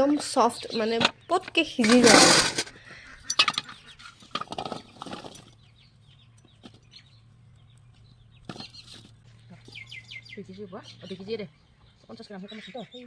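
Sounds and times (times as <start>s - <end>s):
rustling handling noises: 0.7s - 5.5s
faint bird calls: 2.7s - 4.2s.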